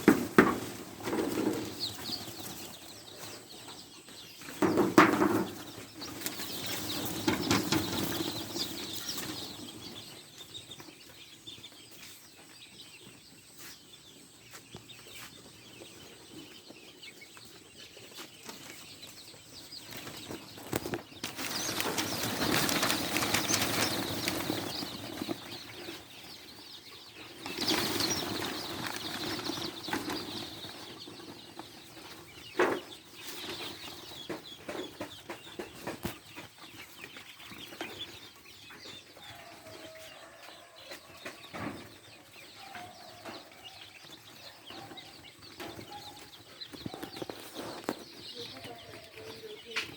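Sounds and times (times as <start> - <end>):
chickens flapping wings: 4.6 - 10.1, 19.8 - 36.4.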